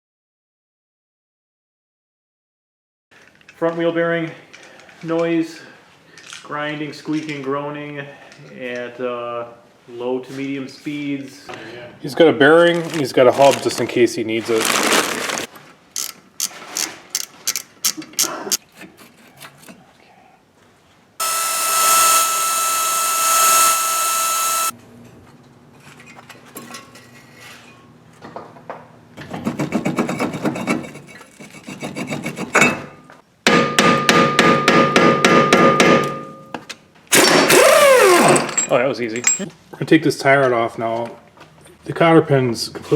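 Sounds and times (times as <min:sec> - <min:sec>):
ratchet clicks: 0:16.0 - 0:18.3
impact wrench hammering: 0:33.5 - 0:36.3.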